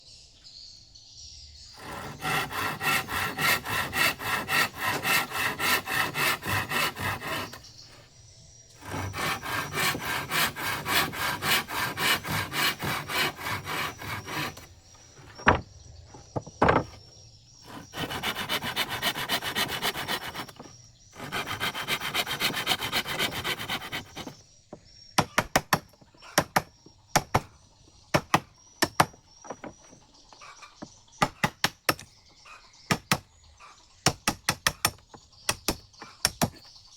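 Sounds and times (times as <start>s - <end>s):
hand saw cutting wood: 1.8s - 7.7s, 8.8s - 14.7s, 17.7s - 24.4s
loud knocks: 15.2s - 17.0s.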